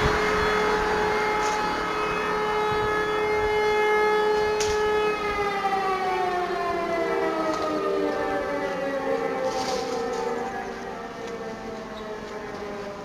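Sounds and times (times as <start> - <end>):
mechanical sirens winding down: 0.0 - 13.0.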